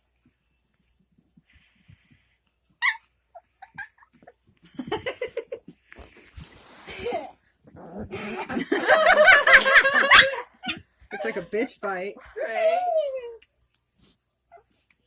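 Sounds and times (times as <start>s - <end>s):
dogs yipping and grunting: 2.7s - 4.5s, 7.6s - 11.7s
dog yelping: 2.8s - 3.9s, 10.0s - 11.4s.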